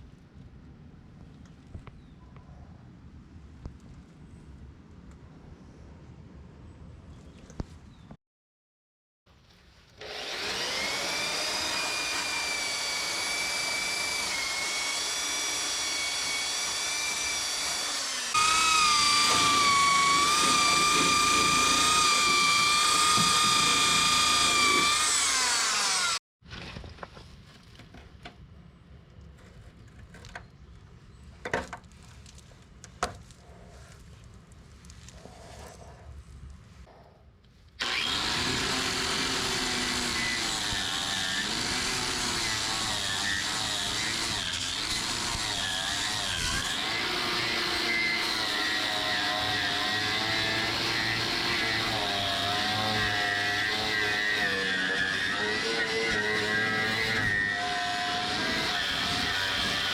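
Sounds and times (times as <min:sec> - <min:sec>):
power tool whining: 0:10.0 - 0:26.2, 0:37.8 - 0:59.9.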